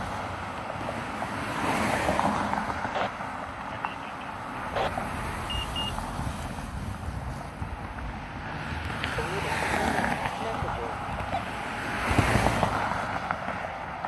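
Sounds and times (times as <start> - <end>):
vehicle traffic noise: 0.0 - 14.0
vehicle passing by: 4.4 - 14.0
short high beeps: 5.4 - 6.0.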